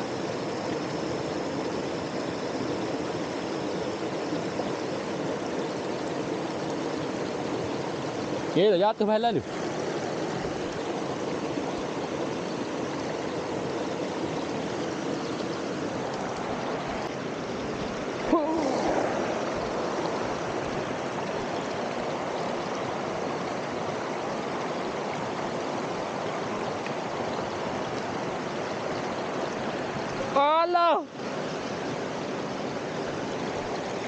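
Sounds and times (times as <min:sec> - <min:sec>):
waterfall and stream rushing: 0:00.0 - 0:34.0.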